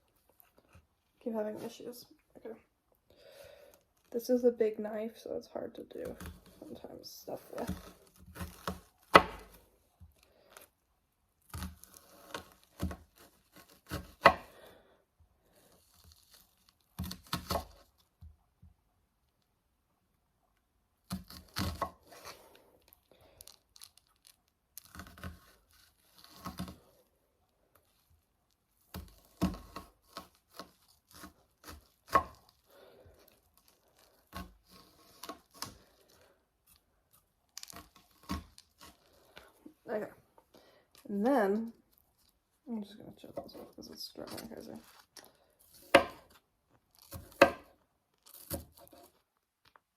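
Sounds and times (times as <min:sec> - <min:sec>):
onion crunching: 0:05.9 - 0:14.7, 0:15.6 - 0:18.2, 0:21.0 - 0:40.1, 0:43.2 - 0:49.9
knife chopping onion: 0:07.4 - 0:09.6, 0:11.5 - 0:14.6, 0:28.9 - 0:32.5, 0:45.7 - 0:46.4, 0:47.1 - 0:47.7.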